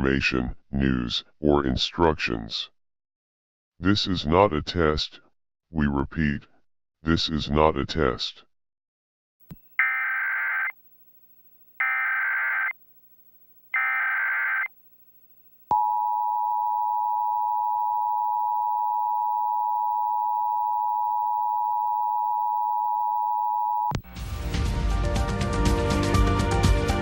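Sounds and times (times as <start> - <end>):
chirping data bursts: 9.6 - 15.7
music: 24.0 - 27.0.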